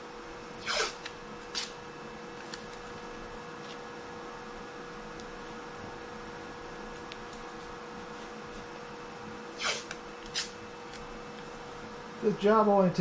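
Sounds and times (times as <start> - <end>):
steady shop hum with faint tone: 0.0 - 13.0
short rasping noises: 9.6 - 10.6.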